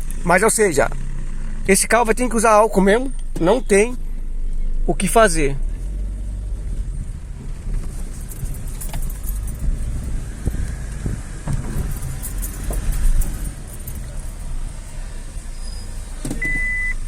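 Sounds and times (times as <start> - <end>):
car engine rumbling: 0.0 - 17.0
knocks and clatters: 7.4 - 14.6
short steady beep: 16.4 - 17.0.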